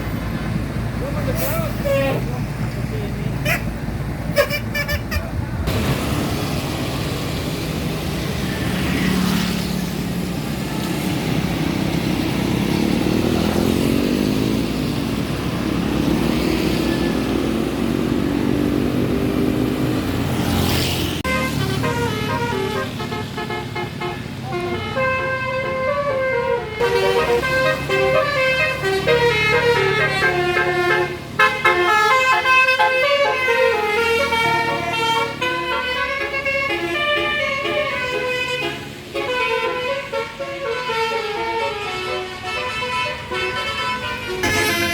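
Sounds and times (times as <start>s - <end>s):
bus engine revving: 0.0s - 44.9s
multi-trumpet air horn tune: 21.2s - 44.9s.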